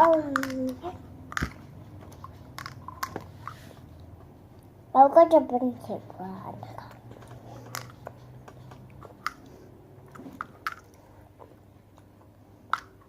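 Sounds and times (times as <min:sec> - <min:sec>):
plastic candy containers clicking: 0:00.0 - 0:01.6, 0:06.8 - 0:09.5.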